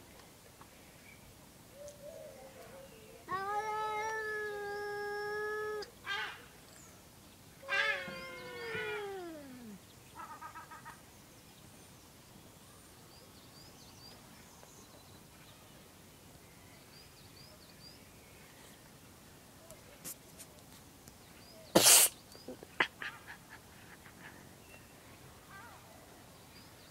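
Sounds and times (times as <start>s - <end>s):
cats yowling: 3.3s - 6.4s, 7.6s - 9.8s.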